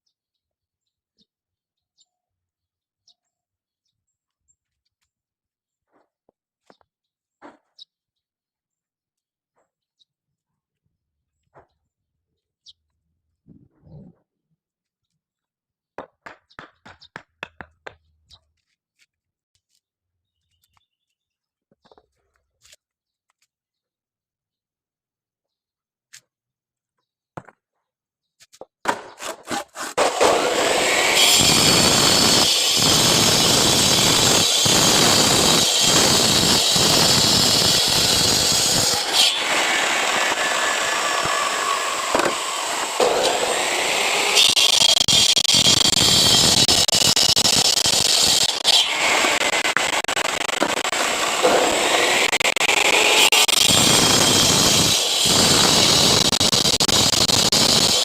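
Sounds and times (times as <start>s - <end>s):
disc cutter cutting concrete: 29.2s - 58.0s.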